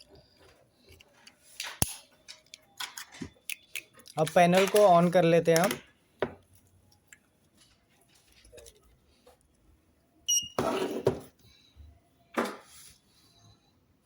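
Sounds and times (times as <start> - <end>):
plastic handling noise: 0.0 - 6.4.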